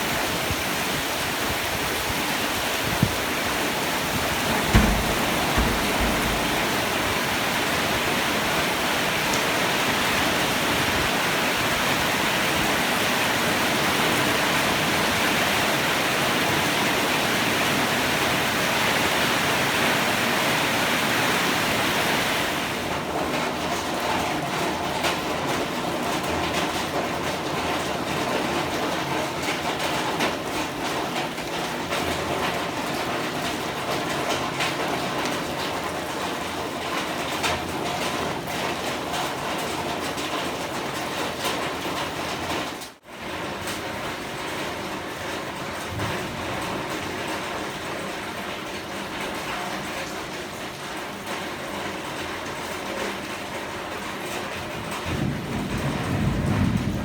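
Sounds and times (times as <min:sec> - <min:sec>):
heavy rain pouring: 0:00.0 - 0:57.0
low thump: 0:04.5 - 0:07.1.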